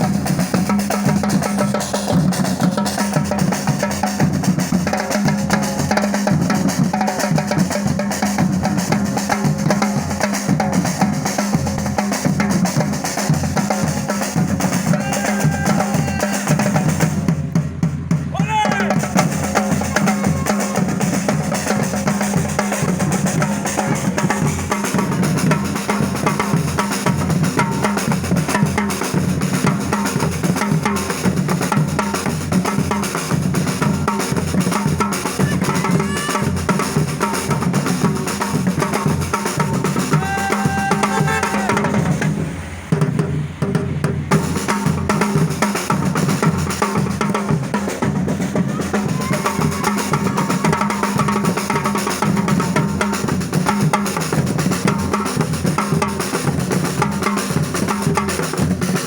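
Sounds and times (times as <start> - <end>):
music with drum beat: 0.0 - 59.0.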